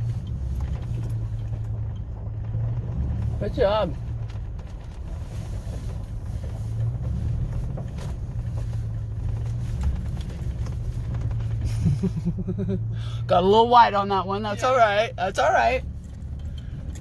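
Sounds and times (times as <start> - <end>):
road noise: 0.0 - 17.0
truck engine humming: 0.0 - 17.0.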